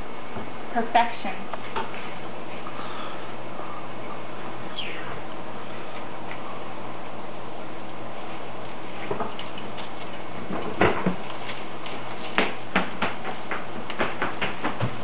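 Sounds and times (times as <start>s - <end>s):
background hiss and hum: 0.0s - 15.0s.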